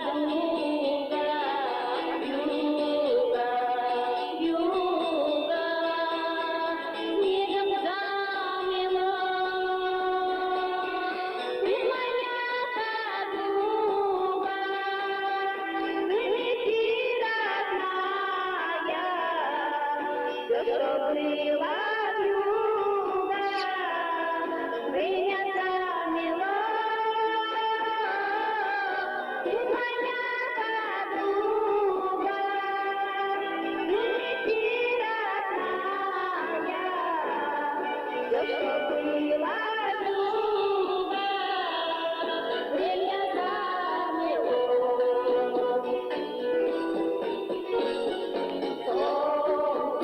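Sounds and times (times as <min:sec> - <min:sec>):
music: 0:00.0 - 0:50.0
woman singing: 0:00.0 - 0:50.0.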